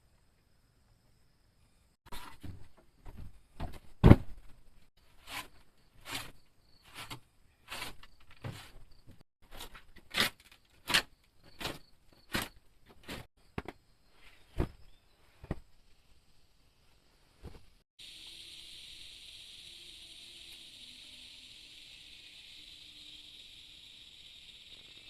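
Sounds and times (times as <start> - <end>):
faint insect hum: 0.0 - 2.0, 13.4 - 25.0.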